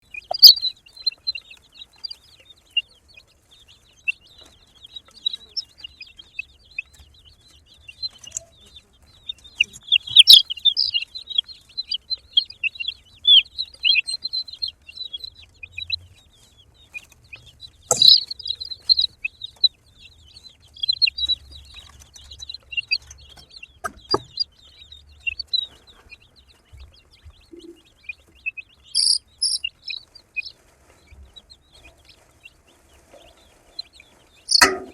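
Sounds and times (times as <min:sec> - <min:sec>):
baby chicks peeping: 0:00.0 - 0:34.9
sharp knocks: 0:17.9 - 0:18.3, 0:34.5 - 0:34.9.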